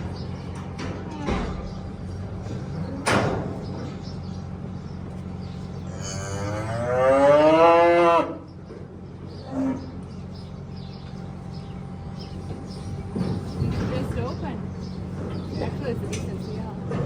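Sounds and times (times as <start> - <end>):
cow mooing: 5.9 - 8.5.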